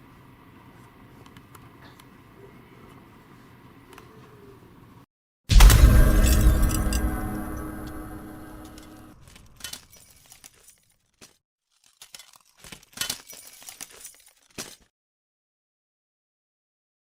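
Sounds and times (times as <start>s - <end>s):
intro music: 5.5s - 9.1s
faint clicks and rustles: 9.2s - 14.9s.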